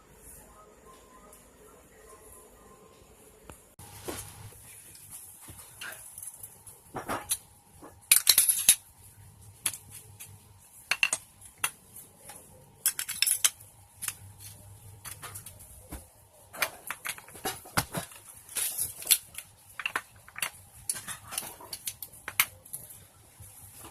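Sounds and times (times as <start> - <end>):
metal tools clinking and knocking: 5.8 - 8.9, 12.8 - 15.5.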